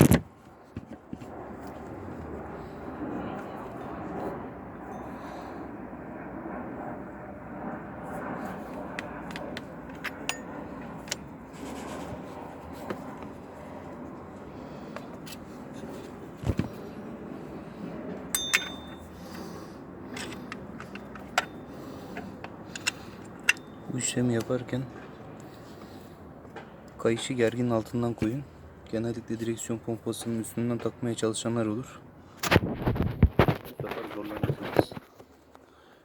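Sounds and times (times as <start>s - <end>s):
tools clinking and scraping metal: 9.3s - 11.2s, 18.3s - 19.5s, 20.1s - 23.9s
ringing metal clink: 18.3s - 19.2s.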